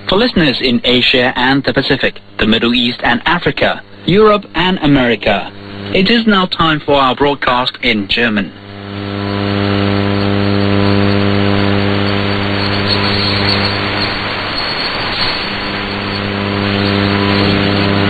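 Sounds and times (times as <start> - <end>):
radio hum with overtones: 0.0 - 18.0
radio static hiss: 0.0 - 18.0.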